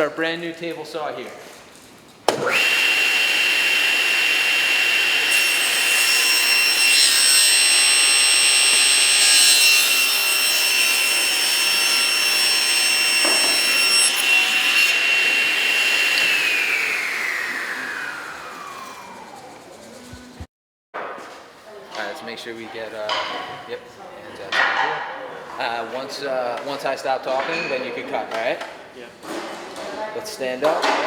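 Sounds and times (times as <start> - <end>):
saw blade cutting wood: 2.3 - 20.3
table saw whining: 2.3 - 20.5.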